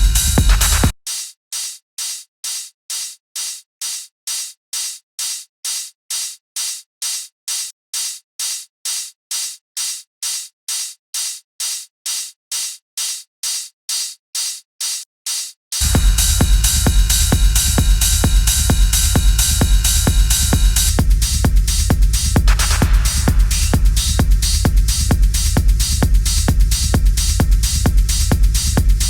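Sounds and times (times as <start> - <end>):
bright hiss-like percussion hits: 0.0 - 0.9, 15.8 - 28.3.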